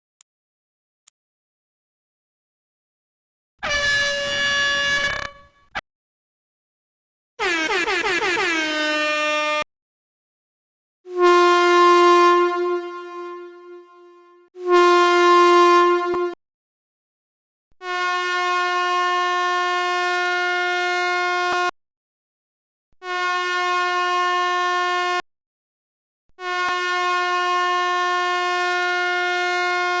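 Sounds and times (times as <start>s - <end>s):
air horn blasts: 3.6s - 5.7s, 11.1s - 16.4s, 17.8s - 21.7s, 23.0s - 25.2s, 26.4s - 30.0s.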